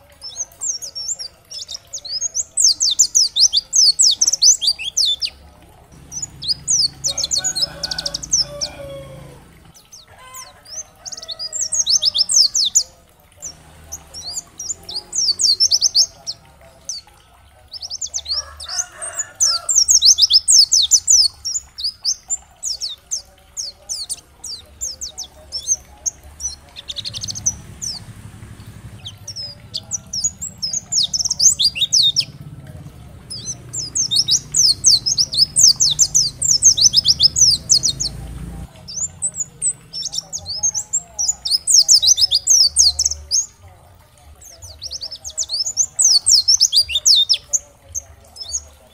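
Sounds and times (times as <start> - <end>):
bird twittering: 6.0 - 43.6.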